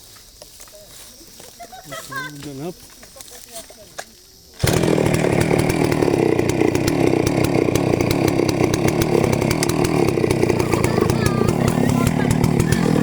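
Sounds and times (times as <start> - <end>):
chainsaw running: 4.6 - 13.0.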